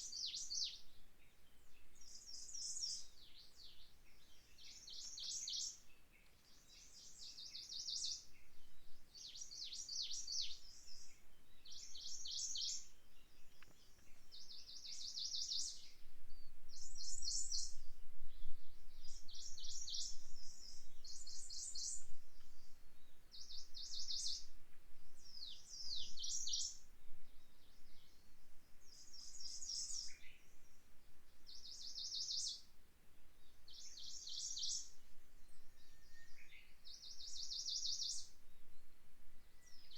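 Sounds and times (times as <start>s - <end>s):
low wind rumble: 15.7s - 29.5s.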